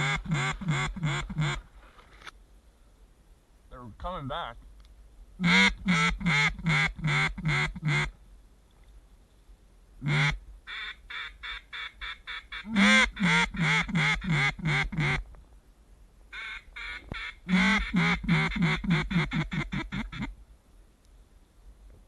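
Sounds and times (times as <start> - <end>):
duck call quacking: 0.0 - 1.6, 5.4 - 8.1, 10.0 - 15.2, 16.3 - 20.3.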